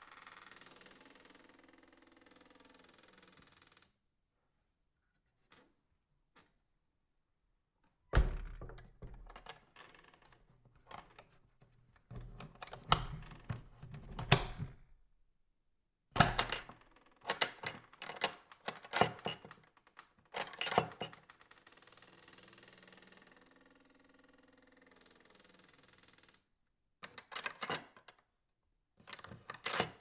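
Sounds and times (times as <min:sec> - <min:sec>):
door knocks: 0:08.2 - 0:09.5, 0:12.2 - 0:14.9, 0:16.2 - 0:16.7
metal latch clacking: 0:08.2 - 0:09.6, 0:10.8 - 0:11.2, 0:12.1 - 0:15.0, 0:16.2 - 0:19.5, 0:20.4 - 0:21.2, 0:29.1 - 0:30.0
door creaking: 0:08.2 - 0:09.9, 0:12.1 - 0:15.0, 0:16.2 - 0:19.5.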